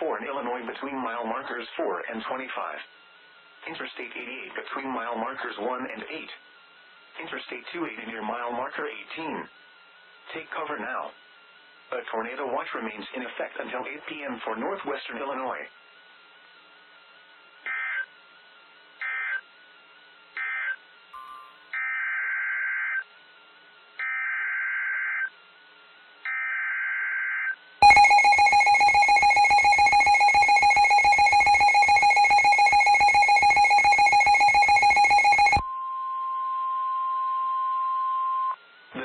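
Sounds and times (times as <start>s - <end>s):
two-tone attention signal: 27.8s - 38.6s.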